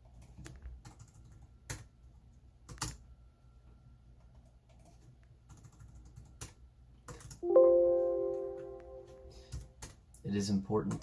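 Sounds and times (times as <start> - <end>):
computer keyboard keystrokes: 0.0 - 1.9, 2.6 - 3.0, 4.2 - 7.4
faint low room hum: 0.0 - 11.0.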